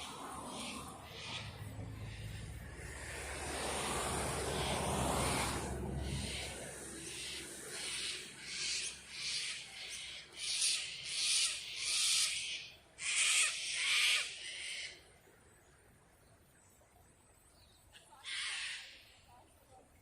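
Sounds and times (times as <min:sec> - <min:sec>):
bird rasping calls: 0:06.0 - 0:15.0.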